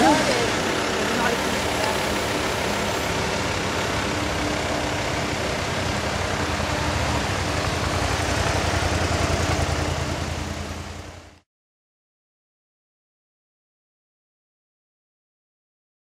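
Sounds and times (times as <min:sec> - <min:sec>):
car engine rumbling at low revs: 0:00.0 - 0:11.4.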